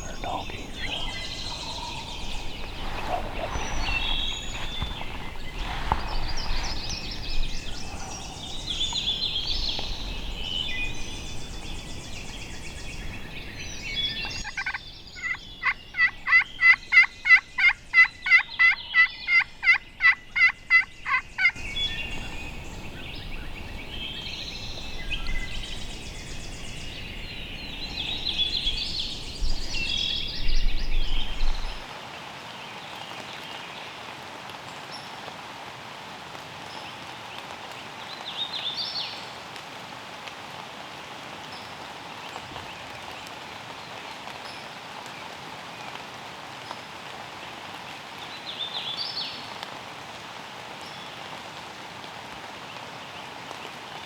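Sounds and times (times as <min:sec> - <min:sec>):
songbirds calling: 0:00.0 - 0:31.9.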